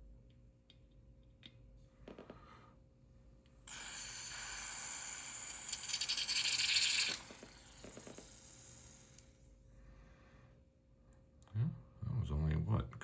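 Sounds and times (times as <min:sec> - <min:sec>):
butane gas hissing: 0:03.6 - 0:09.3.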